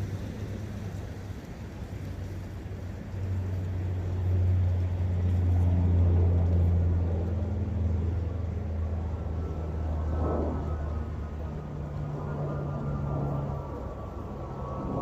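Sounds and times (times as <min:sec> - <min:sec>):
passing vehicle engine rumble: 0:00.0 - 0:15.0.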